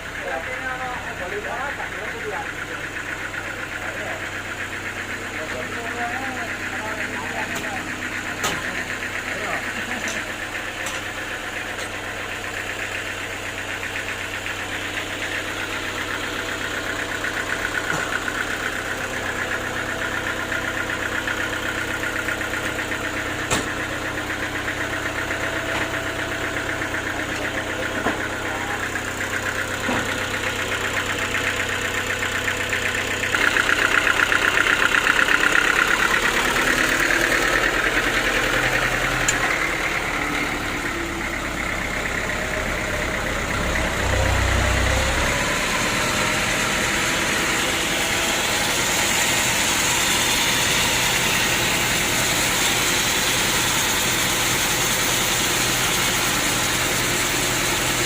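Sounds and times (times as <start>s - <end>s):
sawmill engine running: 0.0s - 58.0s.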